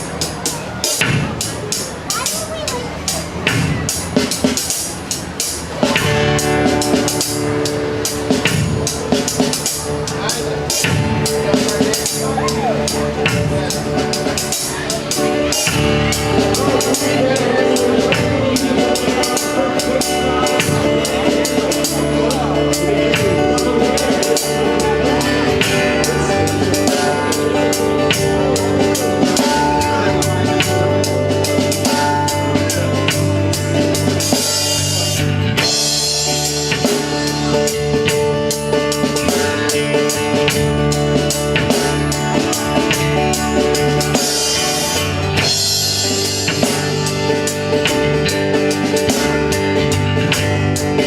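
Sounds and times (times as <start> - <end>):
band music: 0.0 - 51.0
drum kit steady beat: 0.0 - 51.0.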